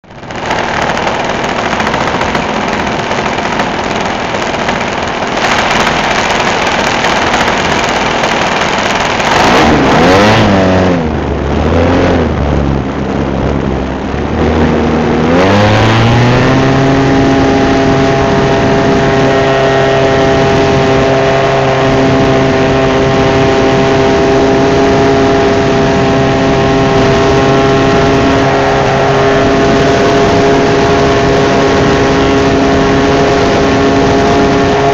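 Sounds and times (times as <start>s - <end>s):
loud rushing noise: 0.0s - 34.9s
model airplane motor and propeller: 0.0s - 34.9s.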